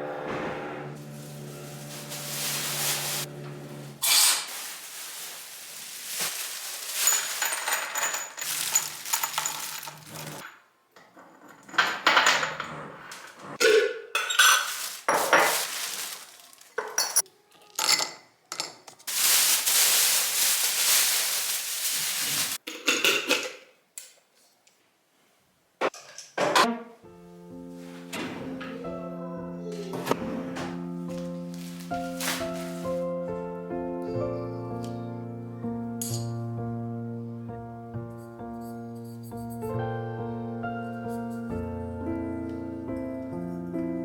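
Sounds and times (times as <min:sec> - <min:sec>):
jars and utensils clinking: 0:04.0 - 0:12.6, 0:13.6 - 0:23.6.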